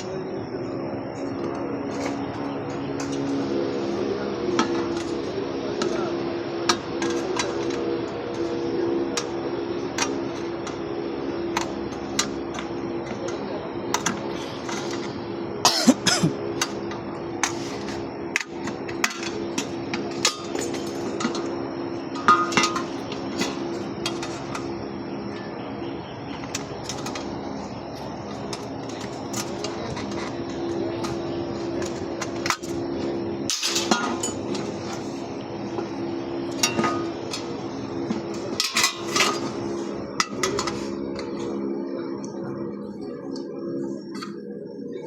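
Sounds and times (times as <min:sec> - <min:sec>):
steady mechanical hum: 0:00.0 - 0:45.0.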